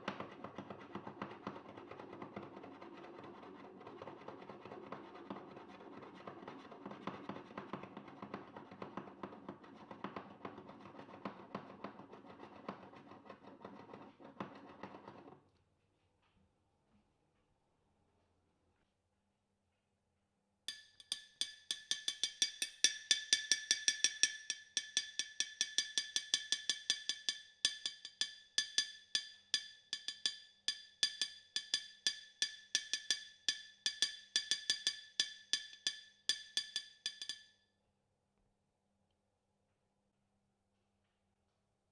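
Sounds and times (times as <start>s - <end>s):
rapid sharp ringing taps: 20.7s - 37.6s.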